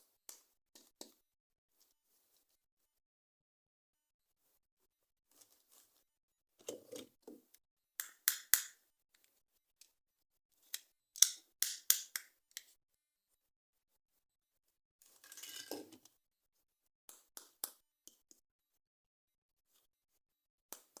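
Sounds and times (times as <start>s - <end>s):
sharp snip-like clicks: 8.0s - 8.8s, 11.2s - 12.7s.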